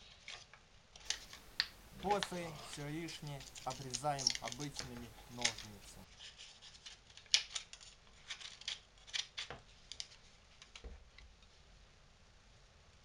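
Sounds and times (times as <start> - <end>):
scissors snipping paper: 1.0 - 6.0.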